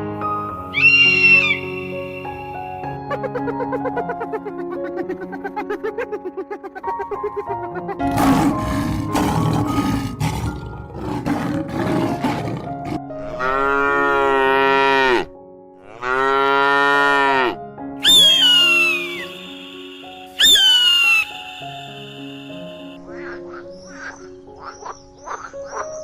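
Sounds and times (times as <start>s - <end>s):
background music: 0.0s - 26.0s
rough noisy growling: 8.1s - 13.0s
cow mooing: 8.2s - 17.6s
high downward sliding call: 18.0s - 22.9s.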